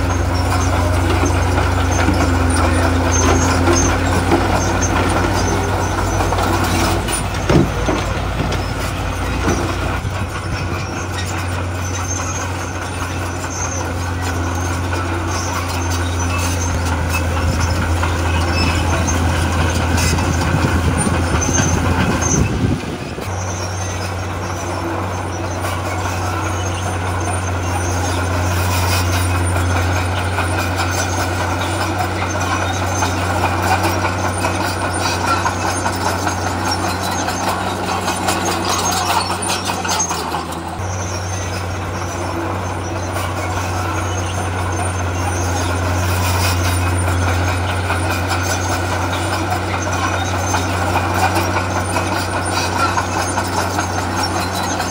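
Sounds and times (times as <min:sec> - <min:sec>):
heavy diesel machinery humming: 0:00.0 - 0:54.9.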